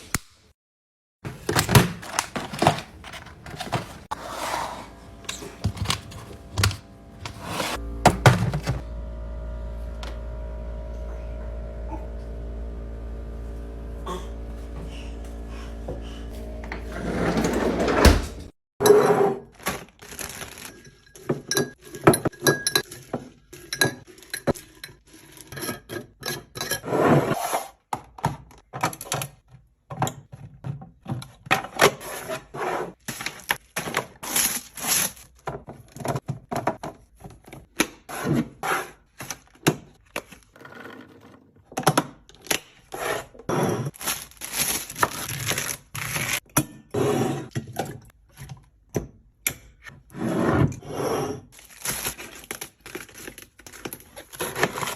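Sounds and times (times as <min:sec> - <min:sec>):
bottles and jars clinking on shelves: 0:20.4 - 0:26.8.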